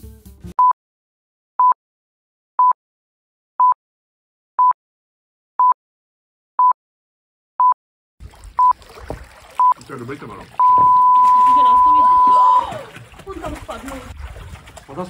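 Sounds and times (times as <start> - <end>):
short electronic beeps: 10.6 - 12.6.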